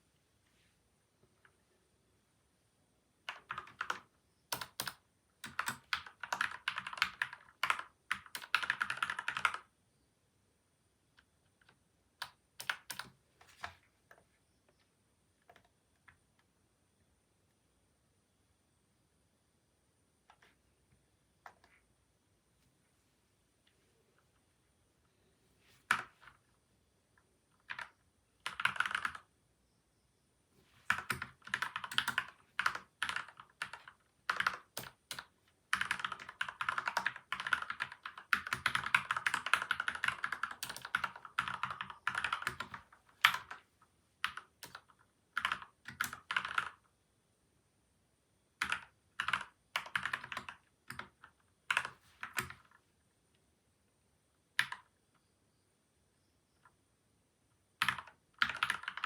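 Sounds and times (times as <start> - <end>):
typing on mechanical keyboard: 3.3 - 9.7, 11.1 - 14.2, 25.9 - 26.4, 27.5 - 29.3, 30.9 - 46.9, 48.6 - 52.8, 54.6 - 55.0, 57.7 - 59.0.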